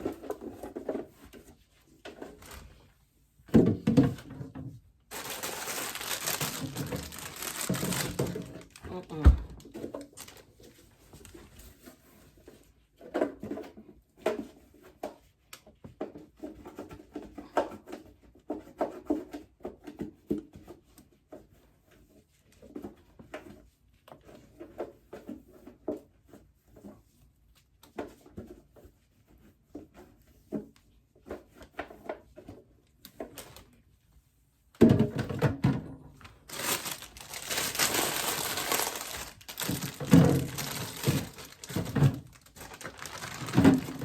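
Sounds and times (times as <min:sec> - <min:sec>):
knocks and clatter of handling: 0:03.4 - 0:21.6, 0:34.8 - 0:44.0.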